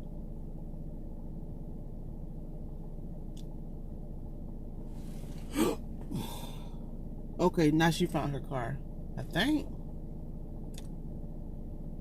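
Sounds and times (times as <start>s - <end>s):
car cabin hum: 0.0s - 12.0s
breathy vocal sound: 5.4s - 6.8s.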